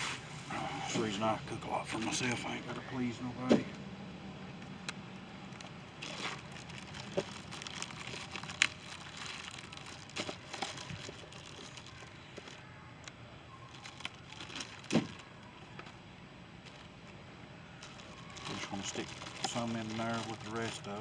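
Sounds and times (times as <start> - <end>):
plastic bag crinkling: 6.0 - 12.6, 13.7 - 15.3, 17.8 - 21.0.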